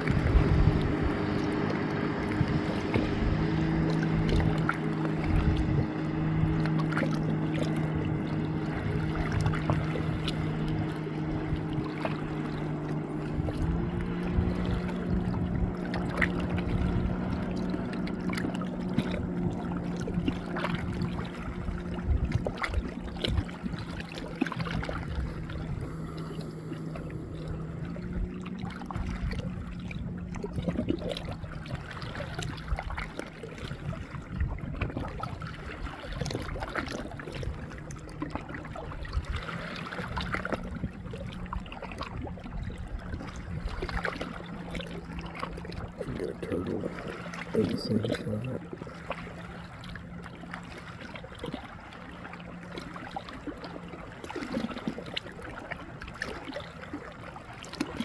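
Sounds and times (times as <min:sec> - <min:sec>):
low hum: 0:00.0 - 0:33.2
river water lapping: 0:00.0 - 0:58.0.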